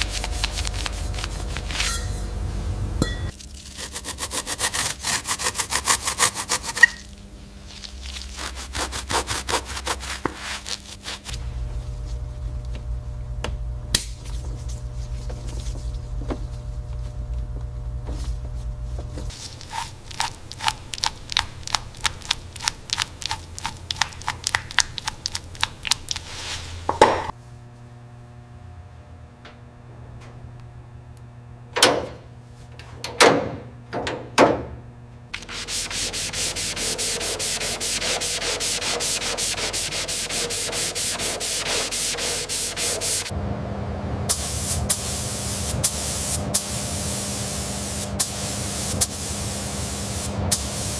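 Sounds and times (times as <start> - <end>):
hand sanding strokes: 3.7 - 7.1, 7.7 - 11.4, 19.3 - 27.0, 35.4 - 43.3.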